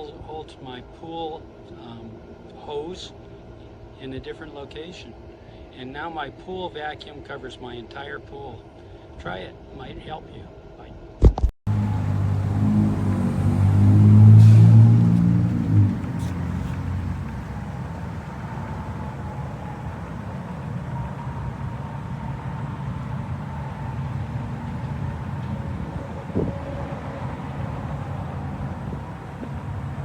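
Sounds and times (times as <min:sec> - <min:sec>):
brief knock: 0:11.2 - 0:11.5.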